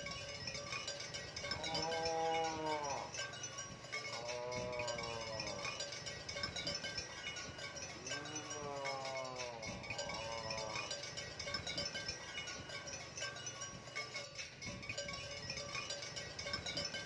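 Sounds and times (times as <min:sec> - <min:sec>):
music with chime-like tones: 0:00.0 - 0:17.0
cattle mooing: 0:01.6 - 0:03.2, 0:04.1 - 0:05.8.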